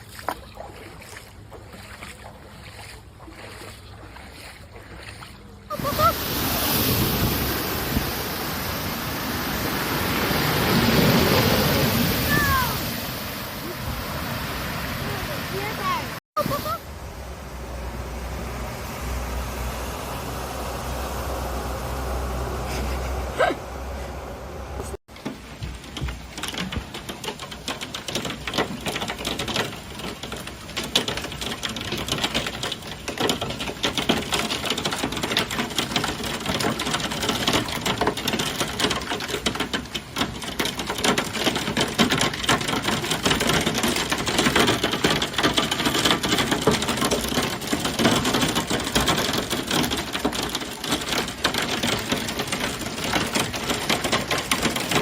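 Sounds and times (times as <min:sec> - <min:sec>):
hailstones clattering on hard surface: 0:25.2 - 0:55.0.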